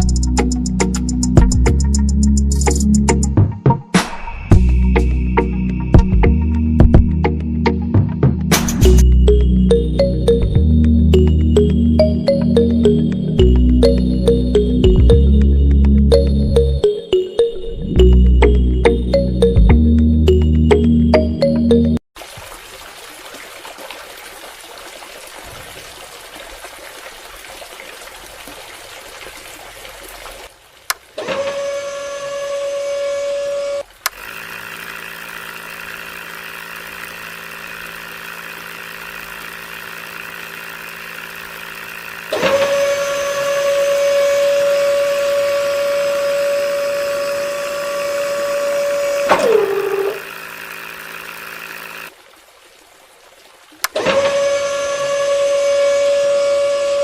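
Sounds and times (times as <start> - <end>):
small electric motor whining: 31.2 - 52.1, 53.9 - 57.0.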